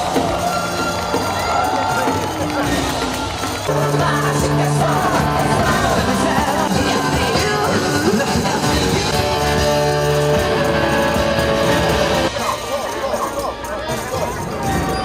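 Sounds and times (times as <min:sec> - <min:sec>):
show music chords and bass: 0:02.5 - 0:12.4
person singing: 0:03.7 - 0:11.1.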